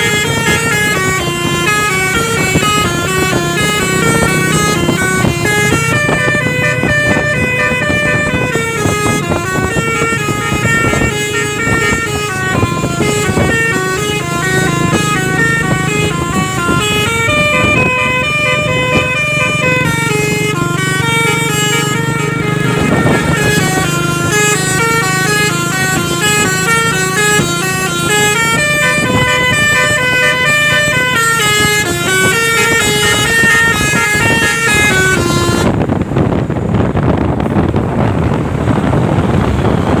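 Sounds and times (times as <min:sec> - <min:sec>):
truck musical horn tune: 0:00.0 - 0:40.0.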